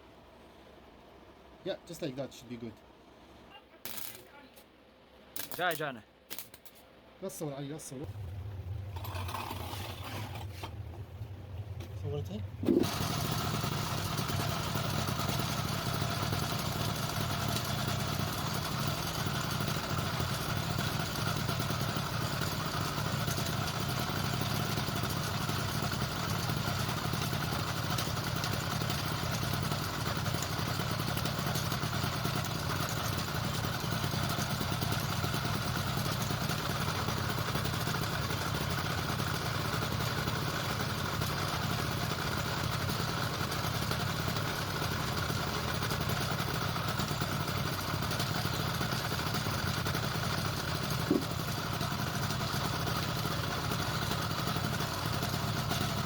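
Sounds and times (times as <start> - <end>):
motorized bicycle engine running: 12.6 - 56.0.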